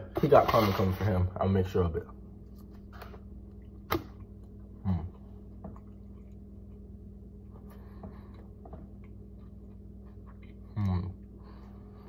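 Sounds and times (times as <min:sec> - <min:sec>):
steady low hum: 0:00.0 - 0:12.0
chewing and mouth noises: 0:02.5 - 0:12.0
person humming briefly: 0:04.8 - 0:05.2, 0:10.7 - 0:11.2.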